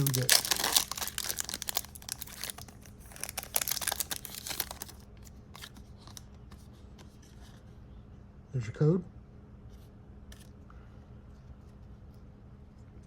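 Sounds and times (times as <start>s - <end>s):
foil wrapper crinkling: 0.0s - 6.2s.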